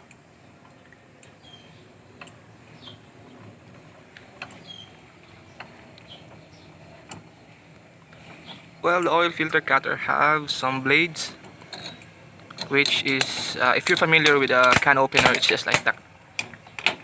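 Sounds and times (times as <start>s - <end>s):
oil filter cutter clicking on metal: 11.2s - 17.0s.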